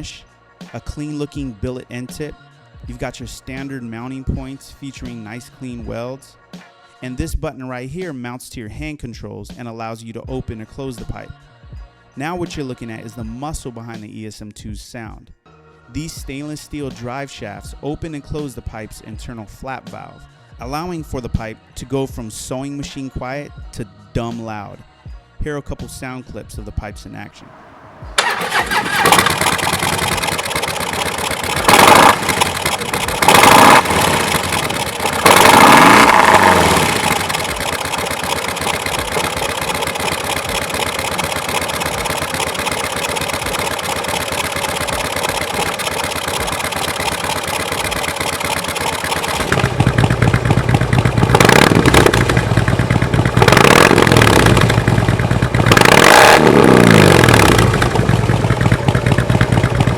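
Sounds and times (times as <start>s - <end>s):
motorcycle engine idling and revving: 27.4s - 59.9s.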